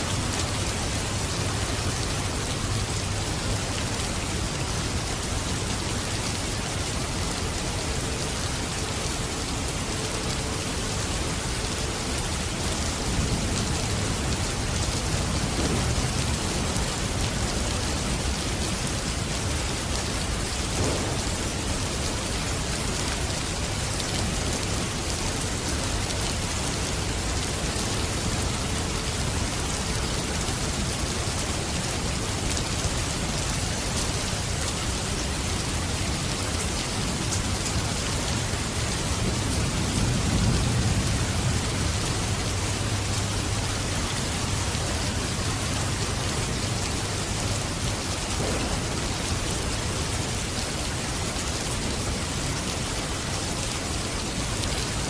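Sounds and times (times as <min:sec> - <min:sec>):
steady rain hissing: 0:00.0 - 0:55.0
low thunder rumble: 0:20.6 - 0:22.1.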